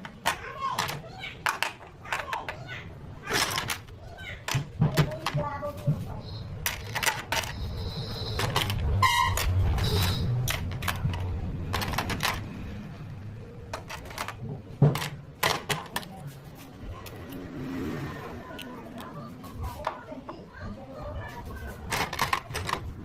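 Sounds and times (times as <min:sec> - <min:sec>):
plastic toy pieces clicking: 0:00.0 - 0:05.4, 0:06.6 - 0:07.8, 0:08.4 - 0:12.6, 0:13.7 - 0:16.2, 0:21.8 - 0:23.0.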